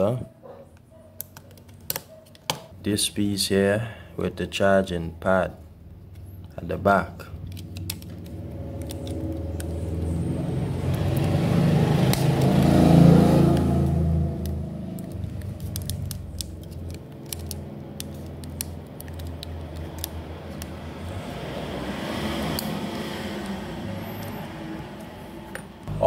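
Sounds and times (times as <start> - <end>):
vehicle engine passing: 7.3 - 26.0.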